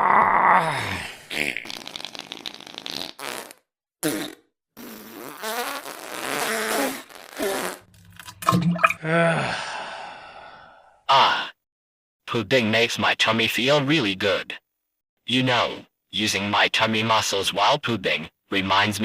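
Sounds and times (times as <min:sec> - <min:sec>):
farts: 0:01.3 - 0:07.9.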